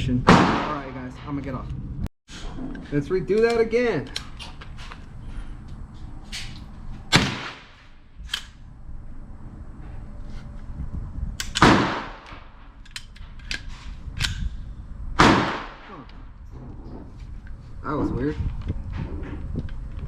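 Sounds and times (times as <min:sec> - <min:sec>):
gunshots cracking: 0:00.3 - 0:00.9, 0:07.1 - 0:07.8, 0:11.6 - 0:12.5, 0:15.2 - 0:16.0.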